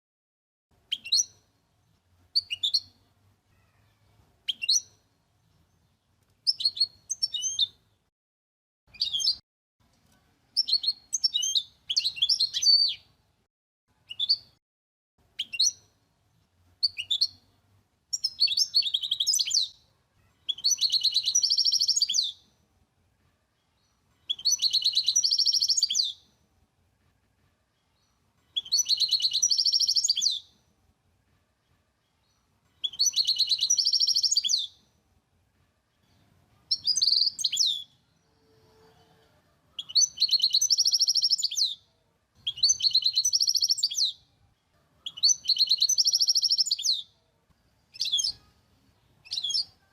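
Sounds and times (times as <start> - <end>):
songbird singing trills: 0.9 - 1.4, 2.3 - 3.0, 4.5 - 5.0, 6.4 - 7.8, 10.6 - 13.0, 15.4 - 15.9, 16.8 - 17.4, 18.1 - 19.8, 20.5 - 22.4, 24.2 - 26.2, 28.5 - 30.5, 32.8 - 34.8, 36.7 - 38.0, 39.8 - 41.8, 42.4 - 44.2, 45.1 - 47.1, 47.9 - 48.5, 49.2 - 49.8.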